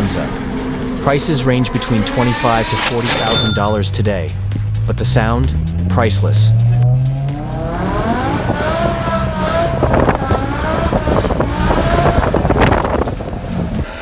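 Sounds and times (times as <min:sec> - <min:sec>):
car engine revving hard: 0:04.6 - 0:14.0
wind noise on microphone: 0:07.6 - 0:14.0.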